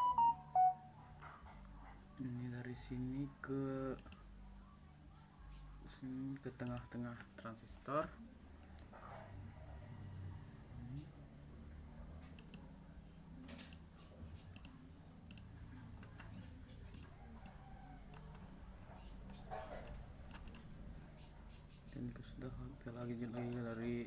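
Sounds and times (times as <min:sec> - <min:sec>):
low steady hum: 0:00.0 - 0:24.0
computer mouse clicking: 0:03.9 - 0:04.3, 0:06.3 - 0:07.3, 0:12.2 - 0:12.7, 0:13.4 - 0:22.2, 0:23.2 - 0:24.0.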